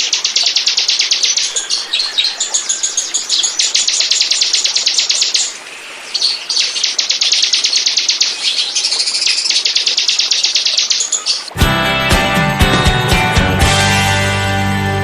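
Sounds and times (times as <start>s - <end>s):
bird song high repeated notes: 0.0s - 11.6s
music: 11.5s - 15.0s.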